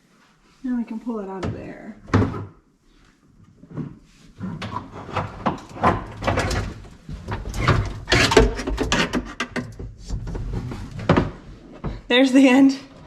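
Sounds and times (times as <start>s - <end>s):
cable scraping and rattling: 4.4s - 11.6s.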